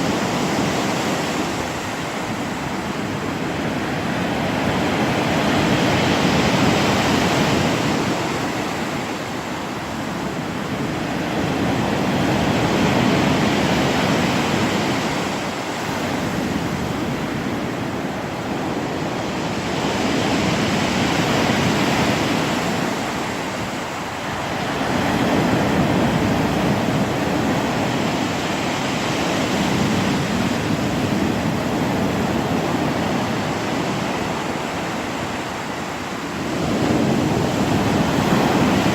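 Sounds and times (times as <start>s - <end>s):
surf breaking on shore: 0.0s - 38.9s.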